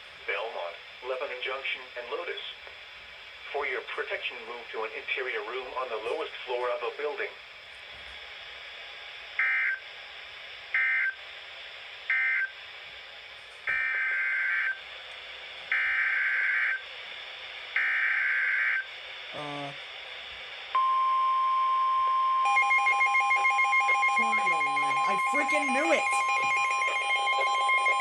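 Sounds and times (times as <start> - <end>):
weather radio hiss: 0.0 - 13.7, 24.2 - 28.0
steady warning alarm tone: 9.4 - 9.8, 10.7 - 11.2, 12.1 - 12.6, 13.7 - 14.9, 15.7 - 16.9, 17.7 - 19.8, 20.7 - 28.0
screeching data bursts: 23.9 - 28.0.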